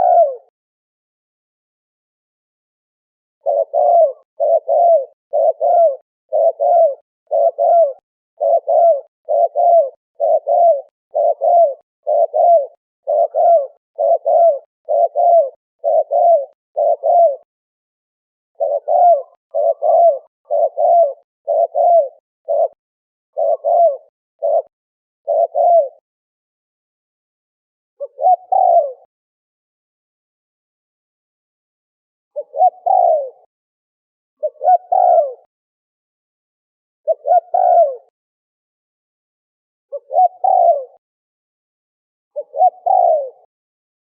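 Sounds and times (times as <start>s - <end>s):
dove cooing: 0.0s - 0.5s, 3.4s - 17.5s, 18.6s - 26.0s, 28.0s - 29.1s, 32.4s - 33.5s, 34.4s - 35.5s, 37.0s - 38.1s, 39.9s - 41.0s, 42.4s - 43.5s.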